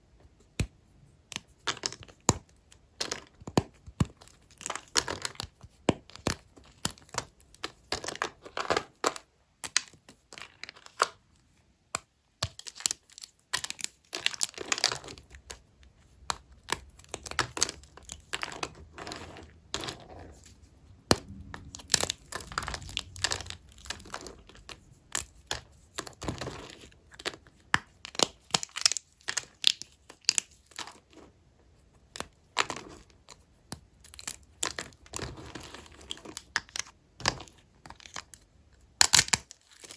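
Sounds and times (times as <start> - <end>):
knife cracking through dry soap: 39.0 - 39.9.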